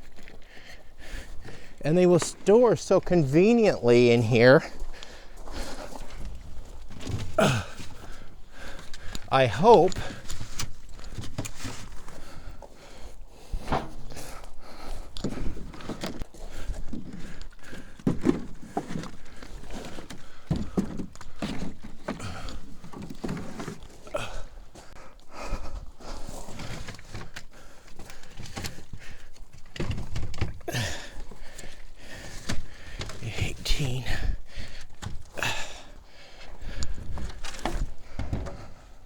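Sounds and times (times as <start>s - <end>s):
jugs knocking and thunking: 32.4s - 38.9s.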